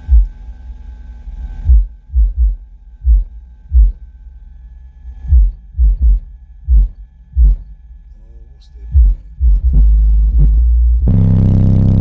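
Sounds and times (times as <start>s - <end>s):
deep bass thumps from subwoofers: 0.0s - 0.4s, 1.7s - 4.1s, 5.2s - 7.8s, 8.9s - 12.0s.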